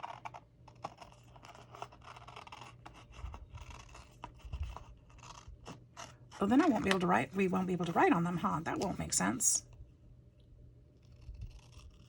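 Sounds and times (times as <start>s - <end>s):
small clicks and scratches: 0.0s - 7.2s, 11.0s - 12.0s
paper being handled and rubbed: 0.0s - 9.0s.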